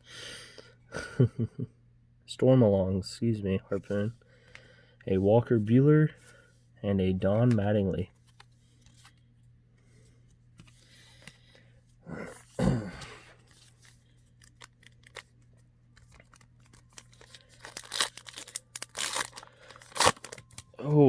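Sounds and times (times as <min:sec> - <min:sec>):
foil wrapper crinkling and tearing: 0:13.4 - 0:20.8.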